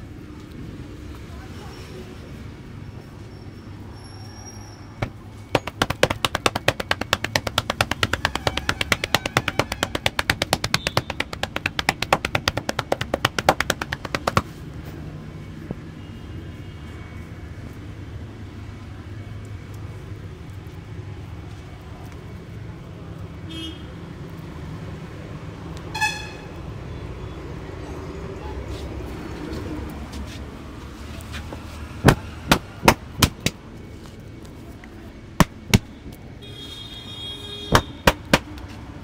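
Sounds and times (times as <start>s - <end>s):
hands slapping on head: 5.0s - 14.6s, 31.3s - 33.6s, 35.4s - 35.9s, 37.7s - 38.8s.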